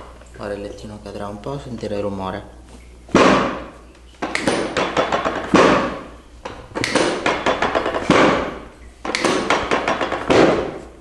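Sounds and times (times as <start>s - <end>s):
treatment table clattering thuds: 3.1s - 11.0s.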